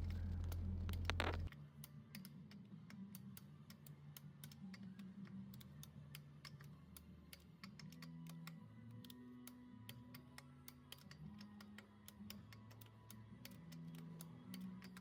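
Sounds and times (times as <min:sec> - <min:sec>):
loud low hum: 0:00.0 - 0:01.5
quiet low hum: 0:00.0 - 0:15.0.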